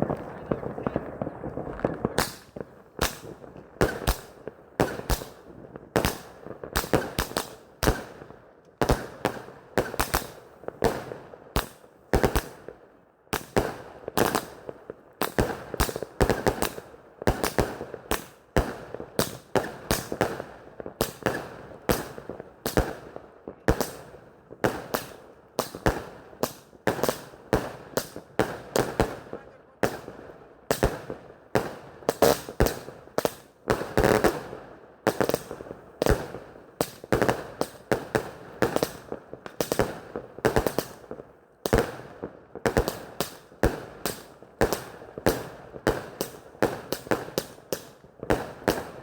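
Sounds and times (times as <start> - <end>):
firework bangs: 0.0 - 8.2.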